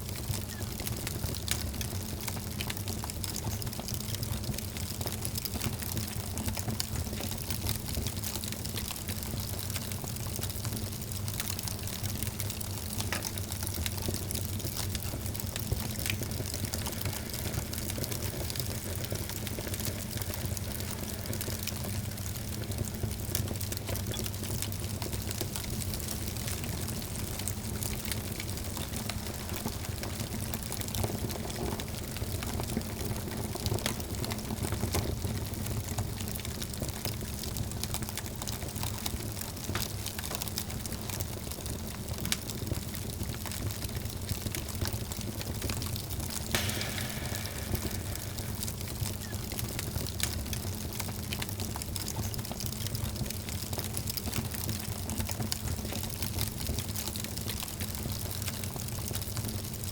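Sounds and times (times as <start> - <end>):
fire crackling and popping: 0.0 - 59.9
low fire roar: 11.3 - 32.4.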